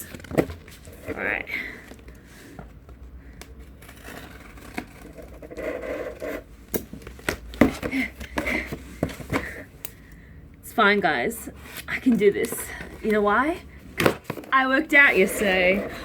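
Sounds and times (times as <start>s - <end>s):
cardboard scraping and rustling: 11.6s - 16.0s.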